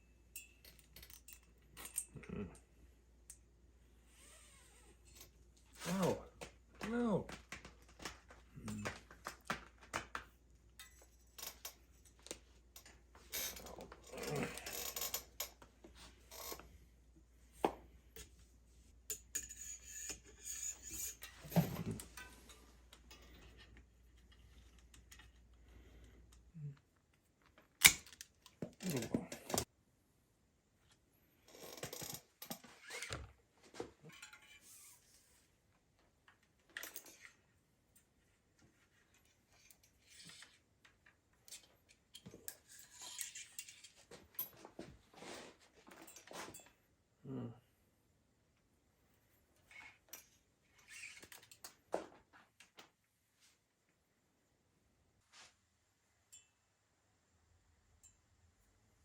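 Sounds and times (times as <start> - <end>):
metal tools clinking and rustling: 0.2 - 2.2, 10.7 - 16.6, 19.1 - 25.6, 31.6 - 35.1, 39.0 - 46.8.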